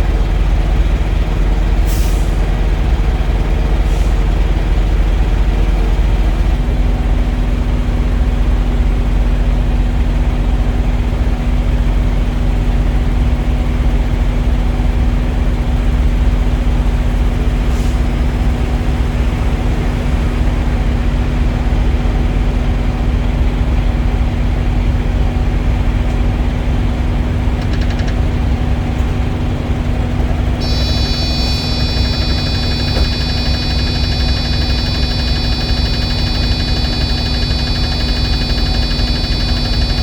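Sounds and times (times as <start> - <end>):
diesel engine idling: 19.0 - 40.0
high-pitched electronic alarm tone: 30.6 - 40.0.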